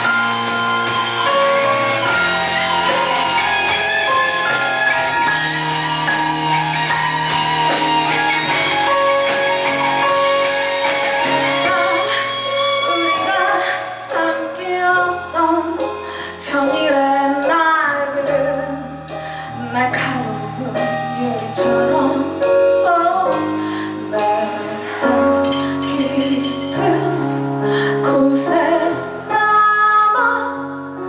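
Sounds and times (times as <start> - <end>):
sustained bass notes: 0.0 - 15.9
guitar: 0.0 - 31.0.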